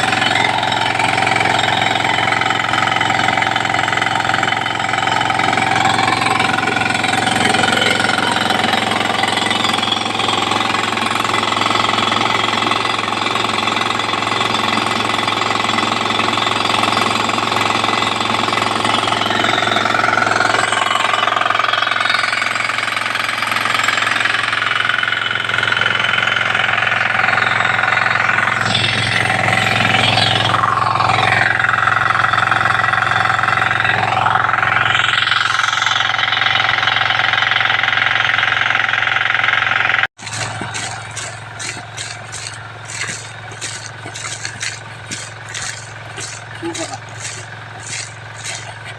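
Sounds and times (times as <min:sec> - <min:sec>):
pitch sweeping sound: 0:00.0 - 0:12.3, 0:25.8 - 0:36.2
engine driving air compressor: 0:00.0 - 0:48.9.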